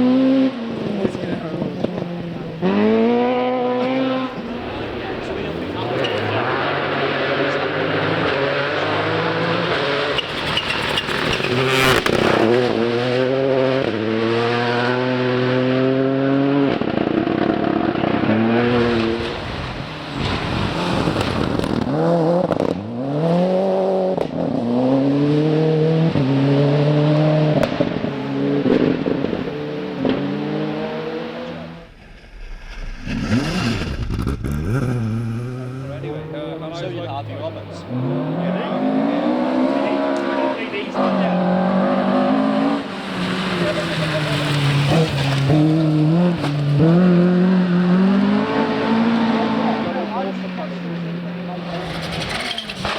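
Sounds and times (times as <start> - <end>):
rally car engine revving: 0.0 - 52.9.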